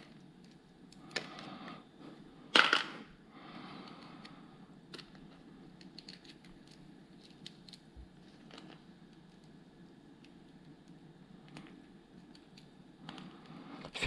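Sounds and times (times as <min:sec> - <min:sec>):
room hum: 0:00.0 - 0:14.0
plastic pieces clicking: 0:05.8 - 0:09.6.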